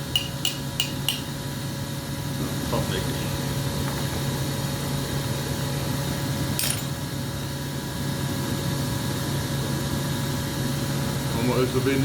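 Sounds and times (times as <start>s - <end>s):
low mechanical hum: 0.0s - 12.0s
glass clinking: 0.2s - 1.3s, 6.6s - 7.0s.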